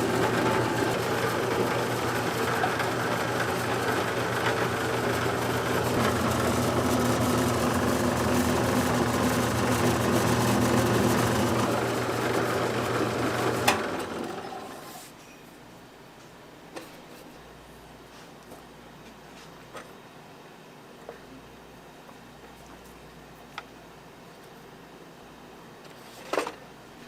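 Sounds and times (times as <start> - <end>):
kitchen machine motor humming: 0.0 - 15.0.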